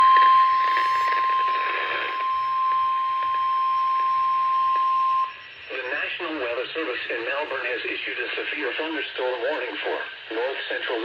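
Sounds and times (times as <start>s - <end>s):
steady alarm beep: 0.0s - 6.9s
radio hiss: 0.5s - 2.4s, 5.3s - 11.0s.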